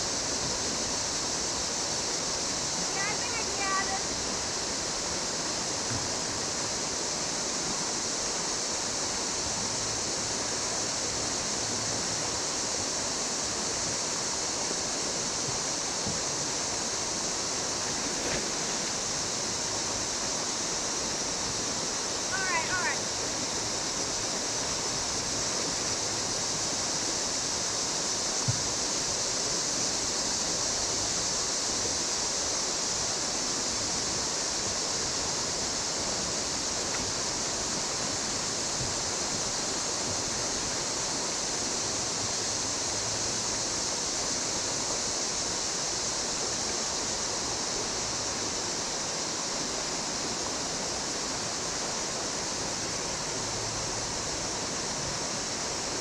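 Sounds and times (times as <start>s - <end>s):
river water rushing over rapids: 0.0s - 56.0s.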